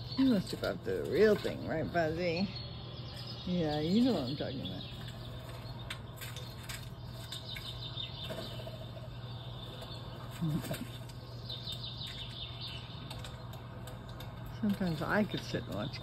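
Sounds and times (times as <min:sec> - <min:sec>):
small birds chirping: 0:00.0 - 0:16.0
steady low hum: 0:00.0 - 0:16.0.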